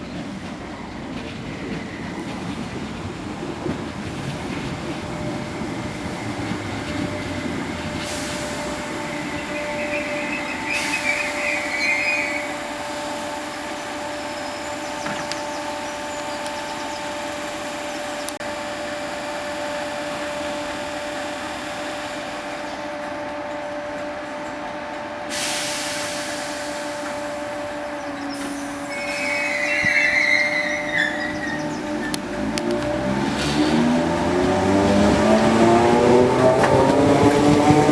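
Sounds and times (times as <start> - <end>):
train electrical hum: 0.0 - 37.9
high wheel or brake squeals: 7.2 - 13.1, 25.4 - 32.5.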